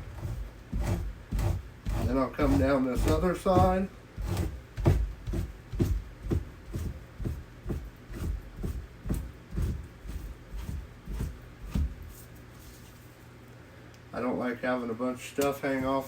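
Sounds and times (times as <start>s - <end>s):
knife scraping fat off hide: 0.0s - 12.3s.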